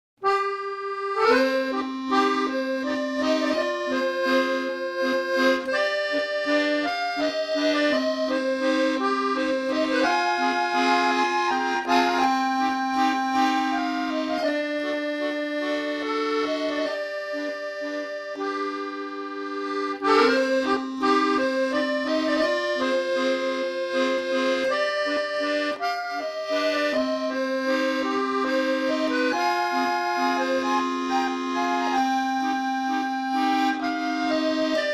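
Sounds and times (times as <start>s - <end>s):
accordion music: 0.2s - 34.9s.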